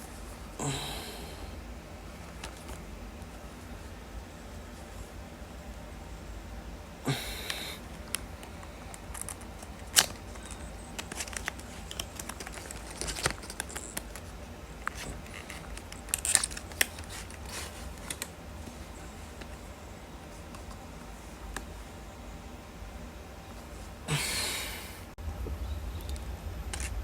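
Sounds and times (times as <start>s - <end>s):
box and plastic handled: 8.8s - 18.3s.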